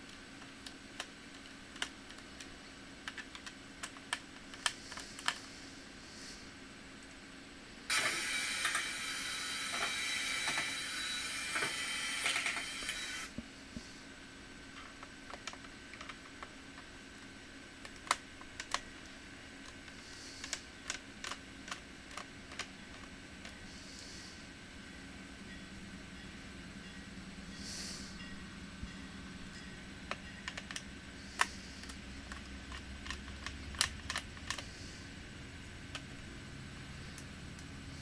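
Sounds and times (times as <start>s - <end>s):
small parts clicking and tapping: 0.0s - 5.5s, 14.8s - 24.1s, 29.5s - 34.8s
high-pitched hiss: 7.9s - 14.2s, 23.6s - 30.4s.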